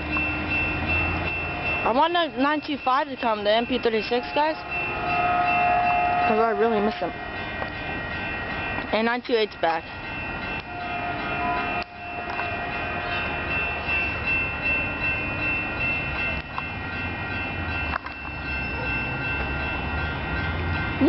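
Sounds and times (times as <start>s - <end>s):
train rumble: 0.0s - 21.0s
high whine: 3.2s - 9.0s, 9.8s - 16.7s.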